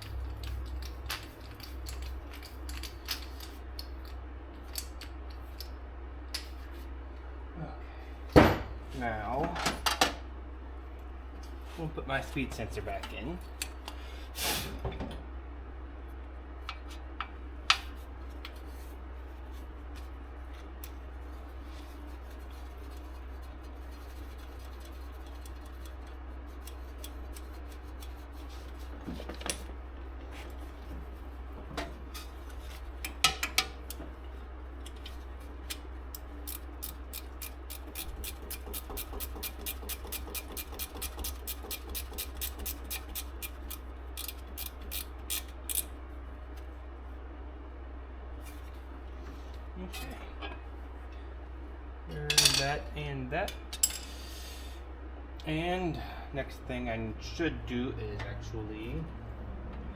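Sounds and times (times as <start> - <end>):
metal parts clicking and knocking: 0.0 - 5.7, 36.4 - 45.9
steady low hum: 0.0 - 59.9
hand ratchet clicking: 36.4 - 45.8.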